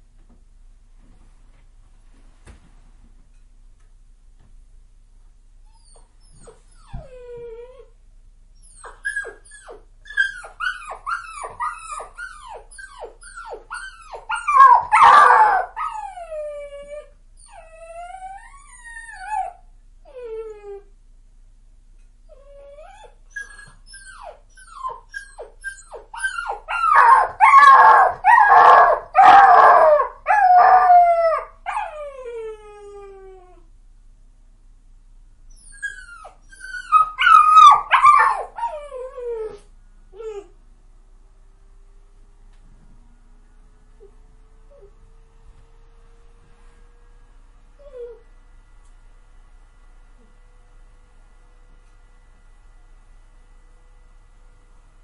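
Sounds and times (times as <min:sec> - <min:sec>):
dog whining and whimpering: 0:05.7 - 0:08.0, 0:08.6 - 0:20.9, 0:22.3 - 0:33.7, 0:35.5 - 0:40.6, 0:44.0 - 0:45.0, 0:47.8 - 0:48.3.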